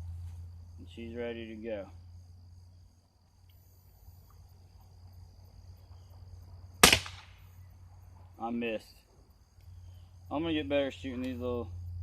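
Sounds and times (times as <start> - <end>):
crickets chirping: 0.0 - 12.0
pellet pistol shot: 6.8 - 7.5.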